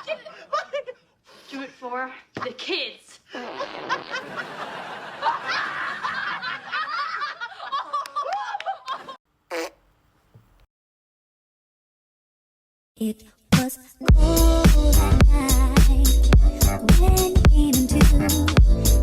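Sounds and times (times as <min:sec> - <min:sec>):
audience laughter: 0:03.9 - 0:09.2.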